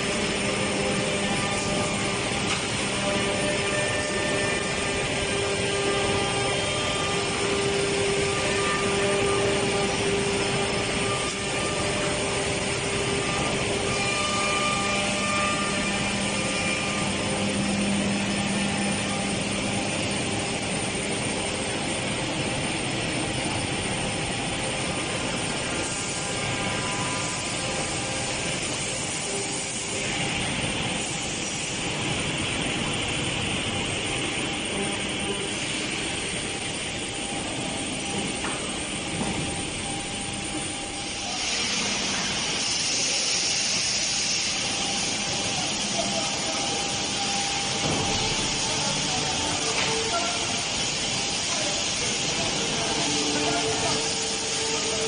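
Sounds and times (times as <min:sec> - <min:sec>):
woodworking machinery humming: 0:00.0 - 0:55.0.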